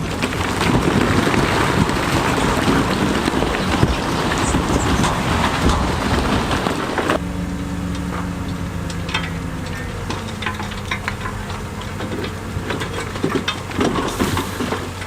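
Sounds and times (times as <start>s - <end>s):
stones knocking and clattering: 0.0s - 7.2s
diesel earthmoving machine running: 0.0s - 15.0s.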